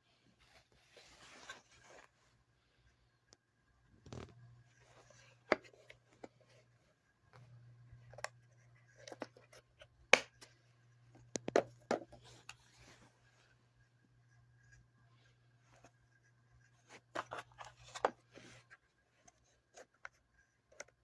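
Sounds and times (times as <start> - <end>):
faint low hum: 0.0 - 21.0
plastic case clicks and knocks: 11.3 - 12.1.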